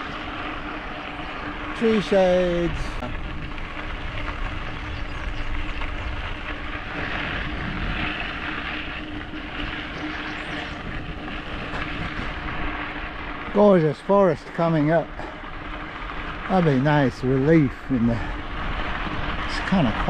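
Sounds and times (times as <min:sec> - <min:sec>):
tyres rolling over dirt: 0:00.0 - 0:20.0
wind on microphone: 0:02.6 - 0:13.0.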